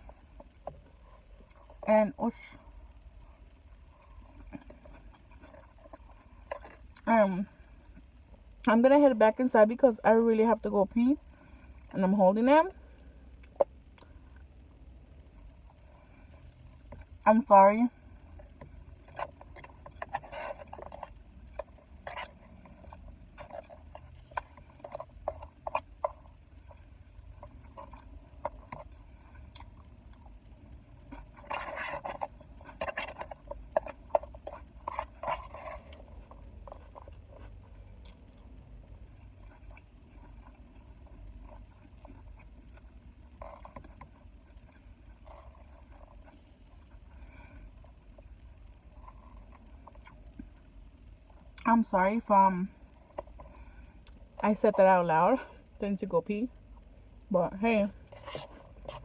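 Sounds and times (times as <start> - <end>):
utensil scraping food container: 19.1 - 26.3, 31.0 - 37.6, 57.9 - 59.0.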